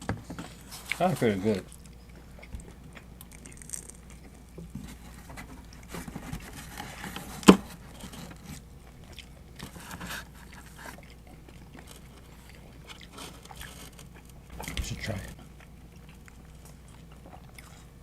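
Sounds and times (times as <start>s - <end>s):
chewing pizza: 0.0s - 18.0s.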